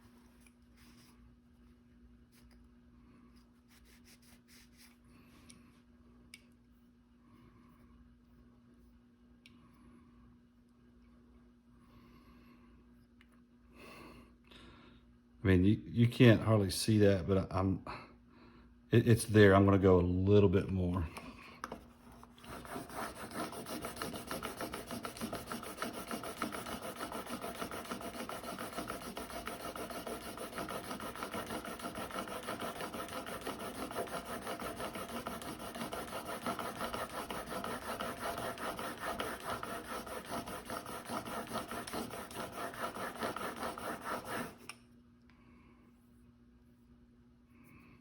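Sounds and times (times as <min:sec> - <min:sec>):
blade rasping on sandpaper: 0:22.4 - 0:44.7.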